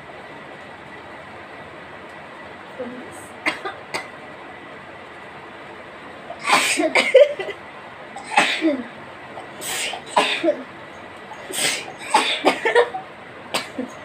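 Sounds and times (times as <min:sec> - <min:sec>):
person coughing sharply: 0:06.4 - 0:07.5, 0:08.2 - 0:08.8, 0:09.7 - 0:10.6, 0:11.5 - 0:13.0.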